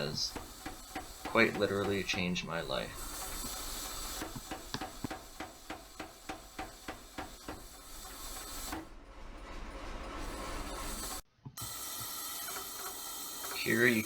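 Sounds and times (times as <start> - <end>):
steady hiss: 0.0 - 8.8, 11.8 - 14.0
power hammer striking hot steel: 0.0 - 9.3.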